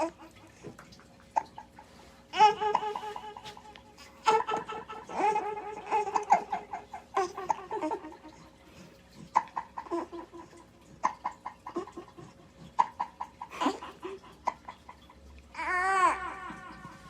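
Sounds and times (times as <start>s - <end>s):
baby cooing: 2.3s - 8.4s, 15.5s - 17.0s
baby vocalising: 2.3s - 8.5s, 9.2s - 14.7s, 15.5s - 17.0s.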